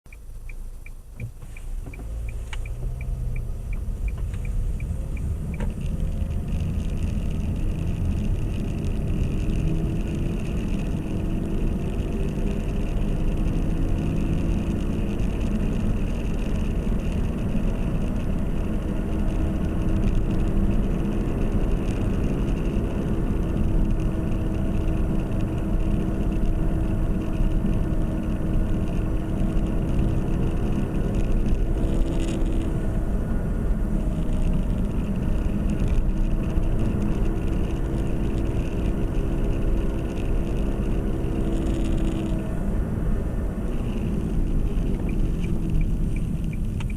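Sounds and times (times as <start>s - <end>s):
regular ticks: 0.1s - 32.9s, 43.7s - 46.9s
wheel hub droning: 0.1s - 46.9s
car accelerating: 1.1s - 46.9s.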